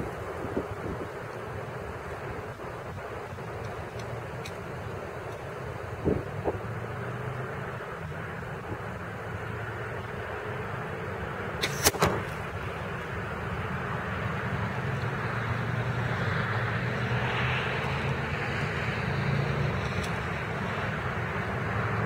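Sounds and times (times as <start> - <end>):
distant engine hum: 0.0 - 22.0
crossbow firing snap: 11.6 - 12.6.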